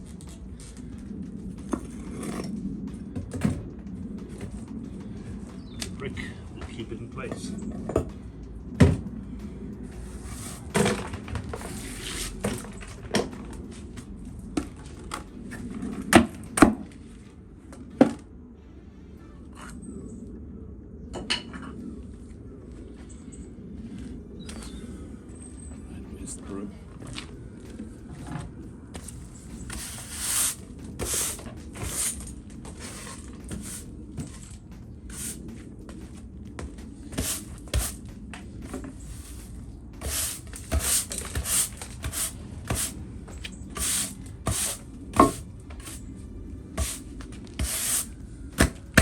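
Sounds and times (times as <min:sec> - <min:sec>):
stiff broom sweeping: 0:10.1 - 0:10.7, 0:11.6 - 0:12.6, 0:29.0 - 0:35.7, 0:37.0 - 0:48.8
scraping: 0:28.1 - 0:49.0.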